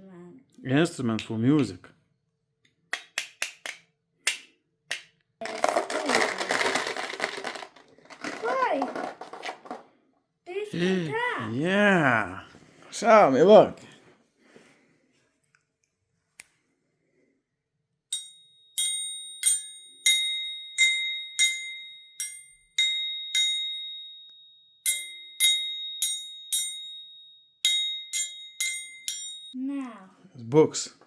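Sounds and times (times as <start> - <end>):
toy instrument bell-like tones: 18.1 - 29.6.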